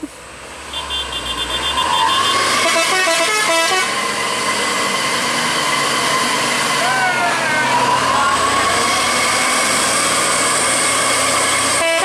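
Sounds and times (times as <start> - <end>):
truck engine running: 0.0 - 12.0
multi-tone musical horn: 0.8 - 4.0, 11.6 - 12.0.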